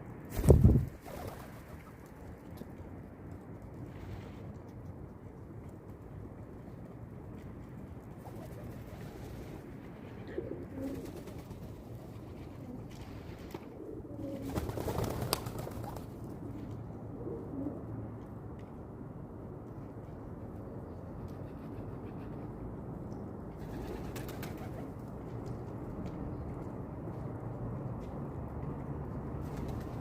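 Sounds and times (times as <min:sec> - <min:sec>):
low background noise: 0:00.0 - 0:30.0
pigeons cooing: 0:09.0 - 0:11.4, 0:12.2 - 0:15.1.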